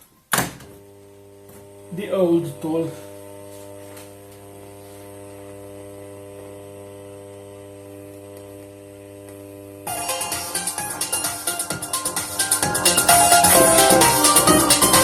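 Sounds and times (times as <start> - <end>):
speaker electrical hum: 0.0 - 15.0
electronic music with fast beat: 9.9 - 15.0.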